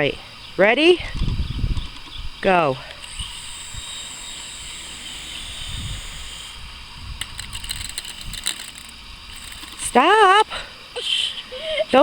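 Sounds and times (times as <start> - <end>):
toy helicopter motor whining: 2.8 - 10.6
rotor blades striking ground: 2.9 - 10.4.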